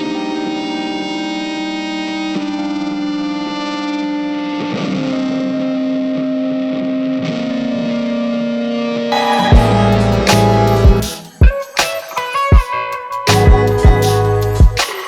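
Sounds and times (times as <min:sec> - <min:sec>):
slow sustained background music: 0:09.1 - 0:12.1.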